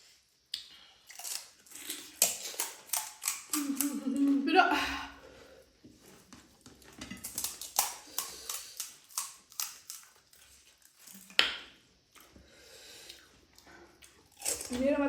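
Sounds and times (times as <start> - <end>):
crisp shells crunching when chewed: 0.6 - 4.0, 7.2 - 11.4, 14.0 - 14.7.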